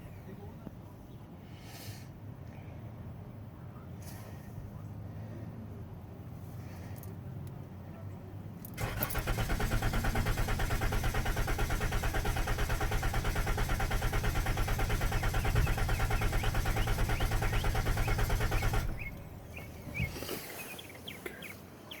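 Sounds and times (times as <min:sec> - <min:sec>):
starter cranking engine: 0:08.8 - 0:19.3.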